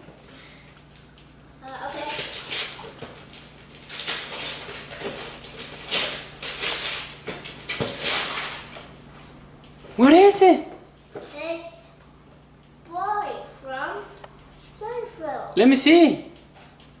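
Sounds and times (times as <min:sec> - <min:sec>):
wrapping paper tearing: 0:01.6 - 0:08.9.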